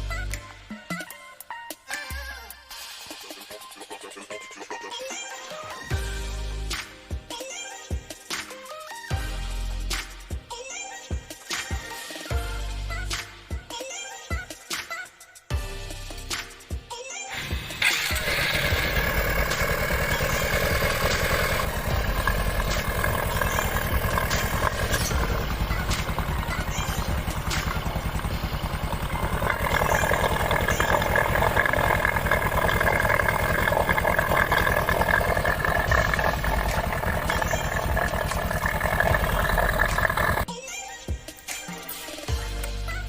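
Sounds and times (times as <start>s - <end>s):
high engine whine: 17.4s - 40.5s
motorcycle engine idling: 17.5s - 40.5s.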